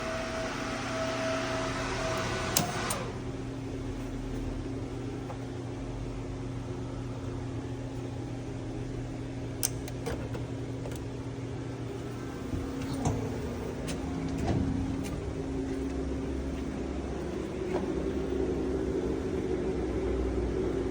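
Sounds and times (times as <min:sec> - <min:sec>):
machine humming: 0:00.0 - 0:05.3, 0:05.9 - 0:20.9.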